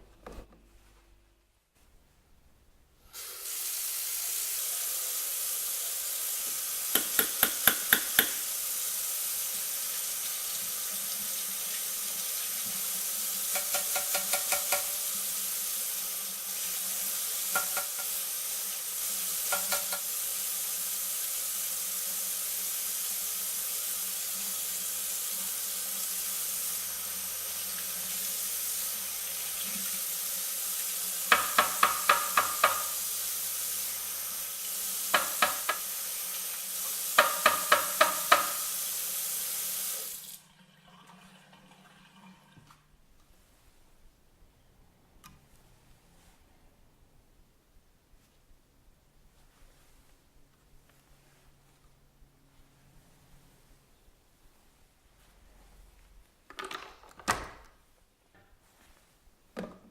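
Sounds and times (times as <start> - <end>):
tap water running: 3.1 - 42.9.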